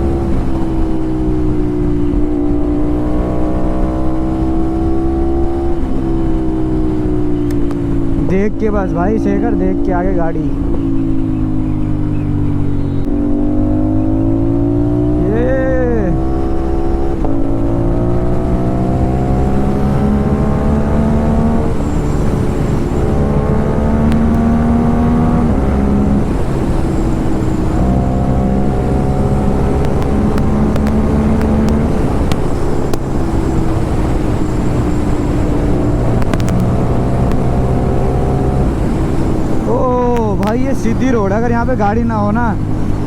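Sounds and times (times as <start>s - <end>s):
motorcycle engine revving through gears: 0.0s - 43.0s
sharp clicks: 29.8s - 33.1s, 36.2s - 37.5s.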